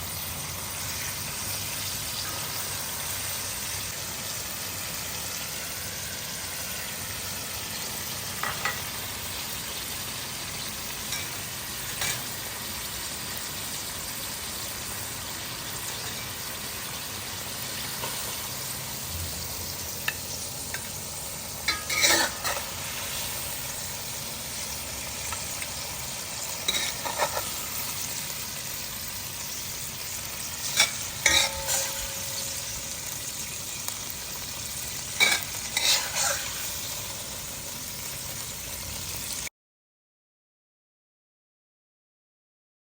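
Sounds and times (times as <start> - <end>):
hot oil sizzling in a pan: 0.0 - 39.5
utensil clinking against pan: 30.6 - 32.6.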